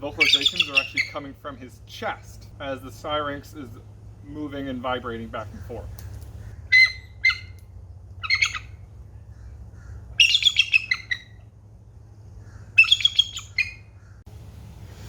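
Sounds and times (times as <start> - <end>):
bird squawking: 0.0 - 1.4, 5.4 - 7.6, 8.2 - 11.4, 12.3 - 14.2.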